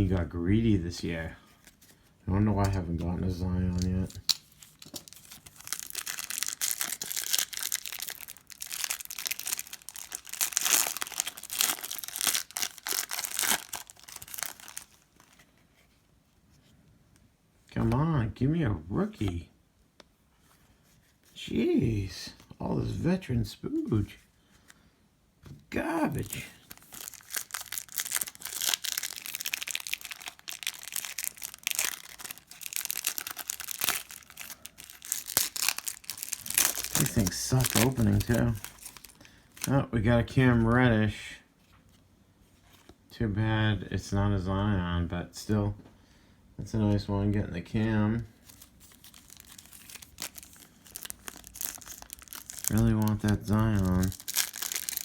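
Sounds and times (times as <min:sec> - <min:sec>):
cellophane wrapper crinkling: 0:03.7 - 0:15.6, 0:25.8 - 0:40.8, 0:48.4 - 0:55.0.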